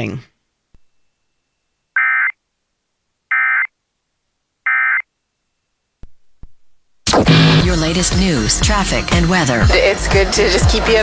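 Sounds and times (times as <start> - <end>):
electronic warbling data tones: 2.0 - 2.4, 3.3 - 3.7, 4.7 - 5.0.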